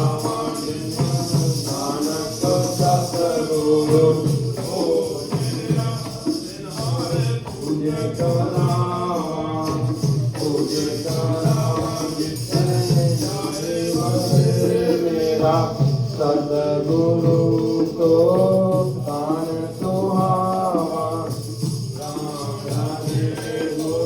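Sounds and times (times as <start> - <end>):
devotional hymn singing: 0.0 - 24.0
steady percussive beat: 0.0 - 24.0.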